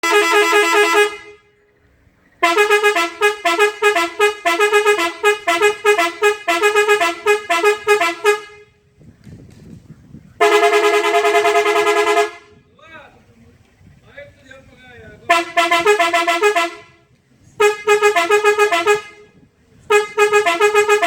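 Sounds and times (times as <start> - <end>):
held car horn blast: 0.0 - 1.6, 2.4 - 8.9, 10.4 - 12.7, 15.3 - 21.0
melody car horn pulses: 0.0 - 1.7, 2.3 - 8.9, 10.4 - 12.7, 15.3 - 21.0.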